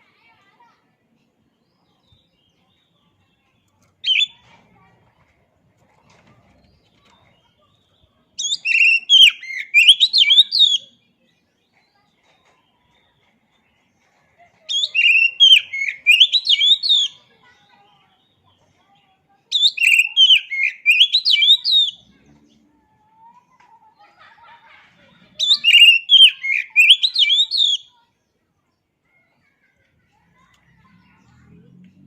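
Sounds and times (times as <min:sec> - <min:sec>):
bird singing whistled phrases: 0:04.0 - 0:04.4, 0:08.4 - 0:10.9, 0:14.7 - 0:17.2, 0:19.5 - 0:22.0, 0:25.4 - 0:27.9.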